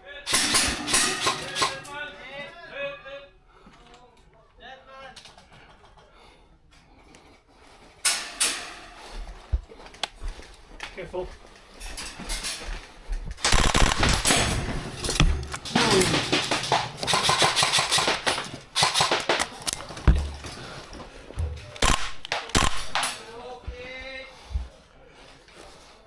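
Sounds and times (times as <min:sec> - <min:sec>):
airsoft guns firing bursts: 0:00.3 - 0:02.1, 0:13.4 - 0:20.8, 0:21.7 - 0:23.4.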